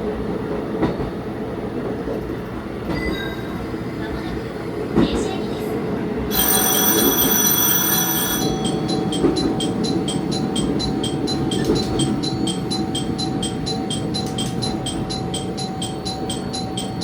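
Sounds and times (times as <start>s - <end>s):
diesel railcar rumbling: 0.0s - 17.0s
level-crossing alarm bell: 6.3s - 17.0s.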